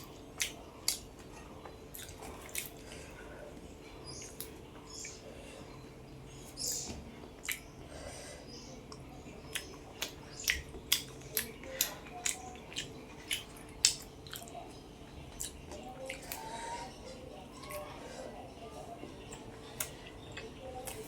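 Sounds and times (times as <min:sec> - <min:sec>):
chewing with wet lip smacks: 0:00.0 - 0:03.1, 0:06.6 - 0:07.8, 0:08.8 - 0:16.6, 0:19.2 - 0:21.0.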